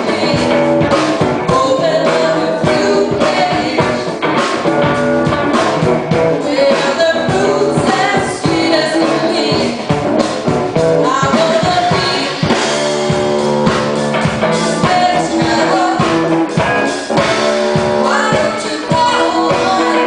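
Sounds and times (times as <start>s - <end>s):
person singing: 0.0s - 4.5s, 5.2s - 10.0s, 11.0s - 13.1s, 14.5s - 16.6s, 18.0s - 20.0s
drum beat: 0.0s - 20.0s
live rock band: 0.0s - 20.0s.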